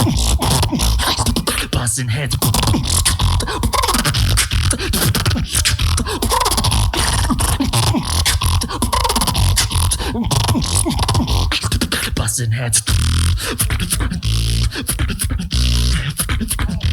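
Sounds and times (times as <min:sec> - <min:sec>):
beatboxing: 0:00.0 - 0:16.9.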